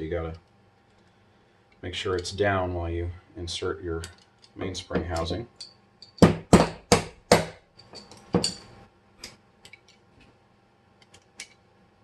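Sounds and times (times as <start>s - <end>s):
pistol parts clicking and knocking: 5.1s - 7.1s.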